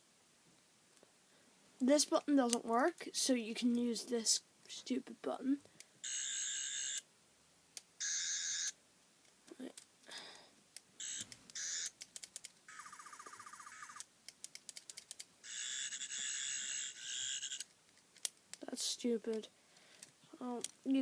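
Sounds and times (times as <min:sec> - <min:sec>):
toy warbling electronic buzz: 0:06.0 - 0:07.0, 0:08.0 - 0:08.7, 0:11.0 - 0:11.9, 0:12.7 - 0:14.0, 0:15.4 - 0:17.7.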